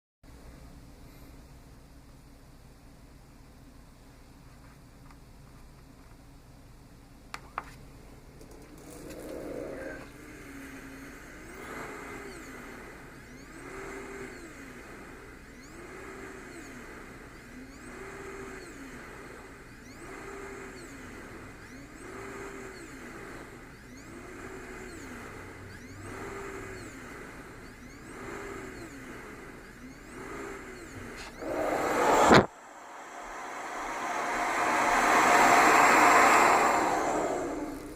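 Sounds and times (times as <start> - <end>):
cpap blower running: 8.2 - 37.9
loud rush of air: 31.4 - 37.9.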